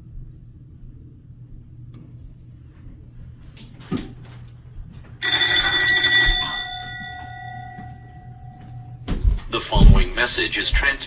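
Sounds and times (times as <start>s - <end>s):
bell-like chime: 5.2s - 9.0s
low hum: 6.3s - 11.0s.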